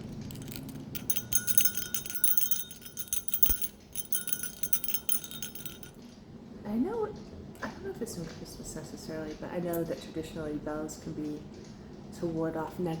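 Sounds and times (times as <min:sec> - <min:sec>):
jingle bell shaken: 0:00.3 - 0:05.9.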